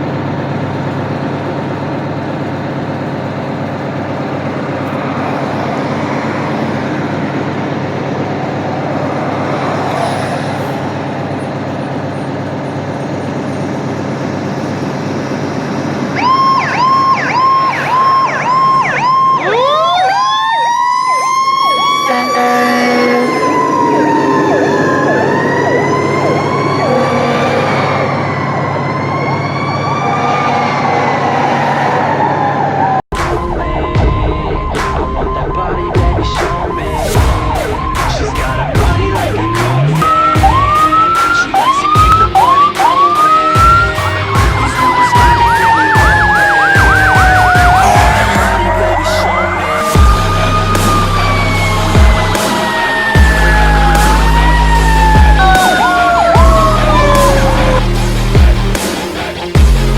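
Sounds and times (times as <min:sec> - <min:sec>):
diesel engine running: 0:00.0 - 0:59.9
siren blips and wailing: 0:02.2 - 0:59.9
short low horn blasts: 0:22.0 - 0:25.4, 0:26.1 - 0:28.6.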